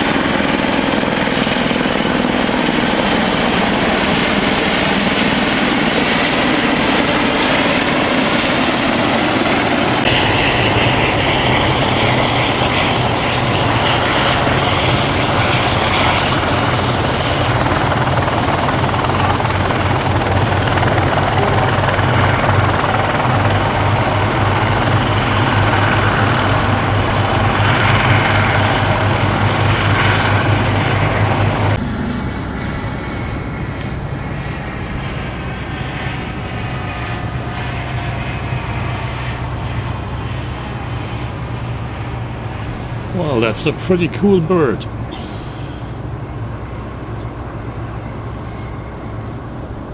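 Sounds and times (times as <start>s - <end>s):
helicopter rotor and engine: 0.0s - 49.9s.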